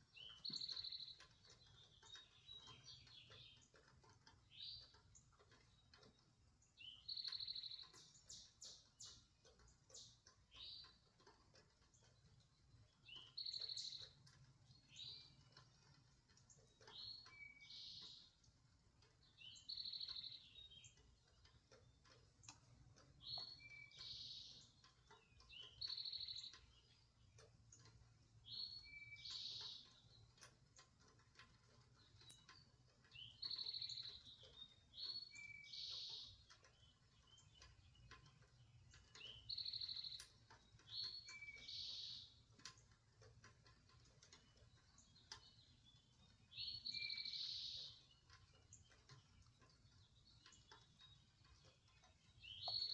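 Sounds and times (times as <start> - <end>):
soft ticks: 0.0 - 52.9
bird calling: 52.0 - 52.9.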